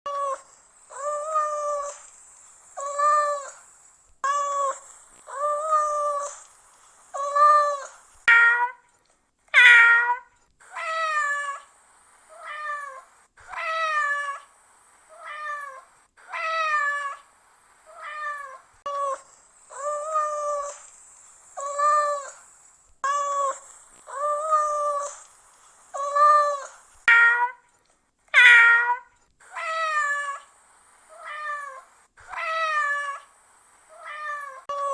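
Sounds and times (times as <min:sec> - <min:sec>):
cat meowing: 0:00.1 - 0:02.0, 0:02.8 - 0:03.6, 0:04.2 - 0:06.4, 0:07.2 - 0:08.8, 0:09.6 - 0:11.7, 0:12.3 - 0:14.5, 0:15.1 - 0:17.3, 0:17.9 - 0:20.8, 0:21.6 - 0:22.4, 0:23.0 - 0:25.3, 0:25.9 - 0:27.7, 0:28.3 - 0:30.5, 0:31.1 - 0:33.3, 0:33.9 - 0:34.9.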